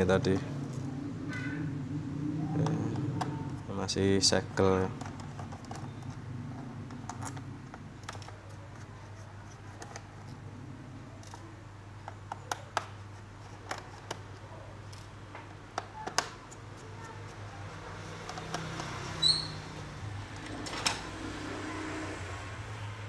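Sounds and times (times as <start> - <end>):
steady low hum: 0.0 - 15.8
plastic parts clicking: 4.8 - 10.4, 11.2 - 16.6.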